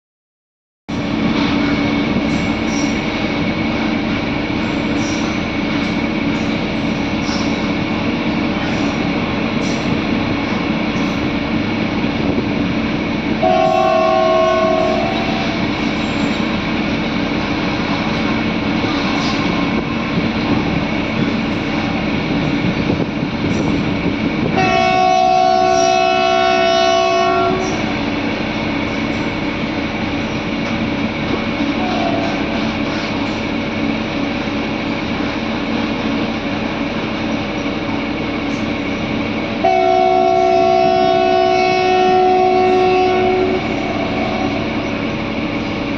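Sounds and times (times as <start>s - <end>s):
train rumbling and rattling: 0.9s - 45.9s
train horn: 13.4s - 15.7s, 24.5s - 28.0s, 31.7s - 32.8s, 39.6s - 44.8s.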